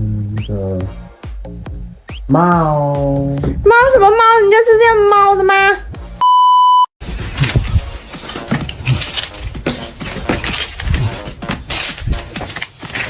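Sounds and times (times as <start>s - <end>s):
low thuds: 1.4s - 5.1s
loud electronic beep: 6.2s - 6.9s
rustling: 7.0s - 13.0s.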